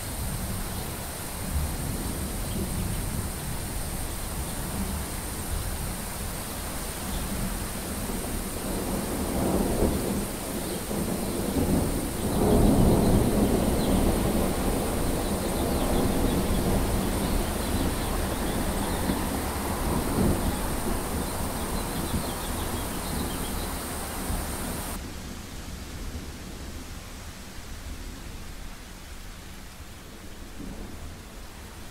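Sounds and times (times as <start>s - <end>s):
thunder rumbling: 0.0s - 25.0s
steady rain: 0.0s - 31.9s.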